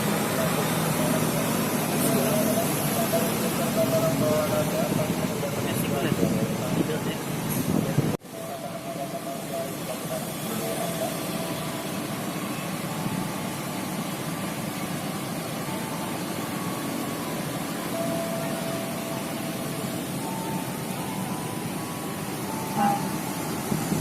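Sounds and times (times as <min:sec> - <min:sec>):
bus engines idling: 0:00.0 - 0:24.0
faint held tones: 0:14.8 - 0:23.8.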